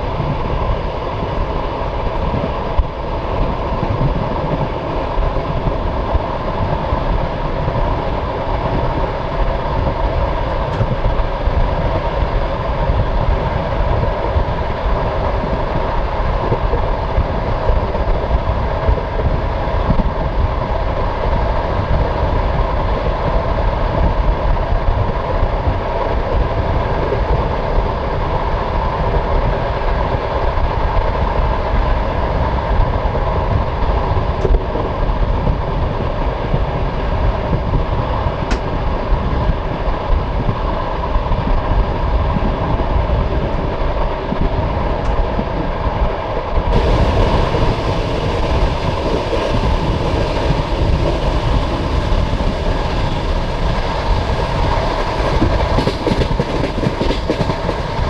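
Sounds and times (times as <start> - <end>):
train wheels rumbling on rails: 0.0 - 58.0.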